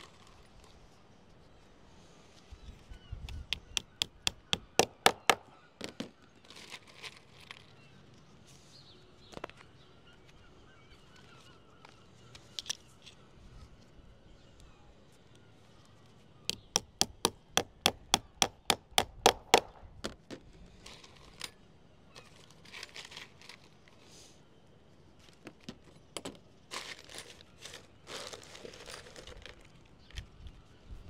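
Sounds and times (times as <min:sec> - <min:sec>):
rustling: 0:20.3 - 0:24.4, 0:25.1 - 0:30.8.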